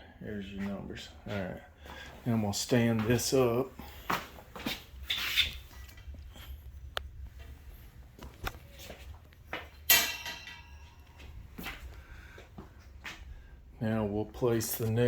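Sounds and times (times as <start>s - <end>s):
low steady hum: 0.0s - 15.0s
metal shelving rack clanking: 9.8s - 11.4s.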